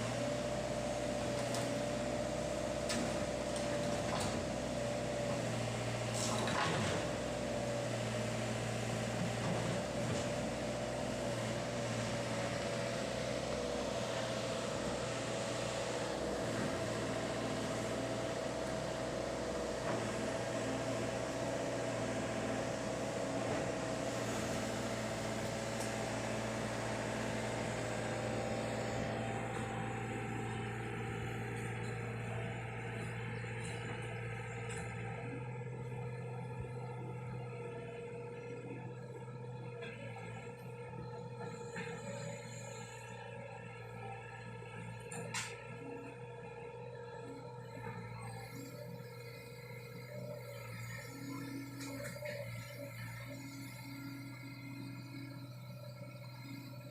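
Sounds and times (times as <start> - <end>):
excavator engine humming: 0.0 - 56.9.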